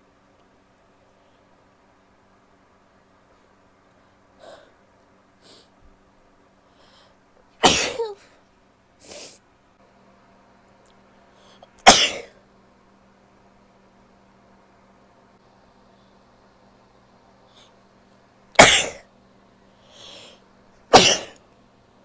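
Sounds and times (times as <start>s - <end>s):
catching breaths: 6.6s - 7.3s, 19.8s - 20.5s
woman sneezing: 7.6s - 8.3s, 18.6s - 19.0s, 20.9s - 21.4s.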